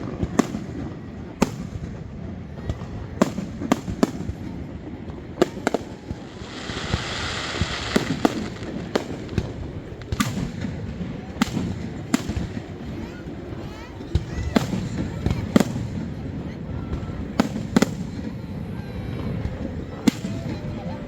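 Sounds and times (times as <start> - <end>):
fireworks bangs: 0.0 - 21.0
fireworks hiss: 5.5 - 13.1.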